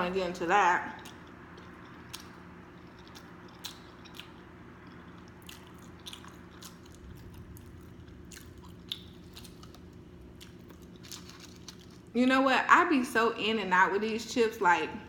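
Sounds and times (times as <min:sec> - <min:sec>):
crunchy chewing: 0:00.8 - 0:12.1.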